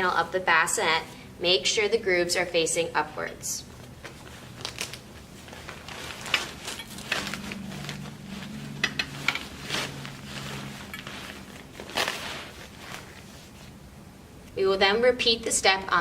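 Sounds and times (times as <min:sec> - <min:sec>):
fabric rustling: 0:03.6 - 0:14.0.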